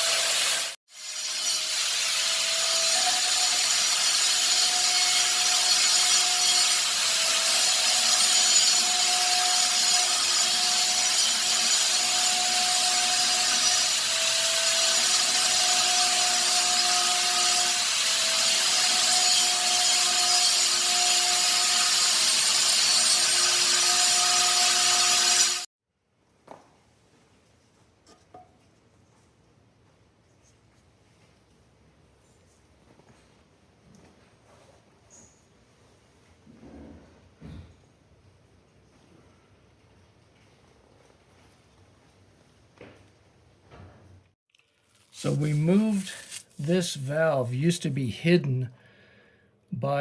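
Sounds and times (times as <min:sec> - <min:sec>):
power tool grinding: 0:00.0 - 0:25.7, 0:45.1 - 0:47.5.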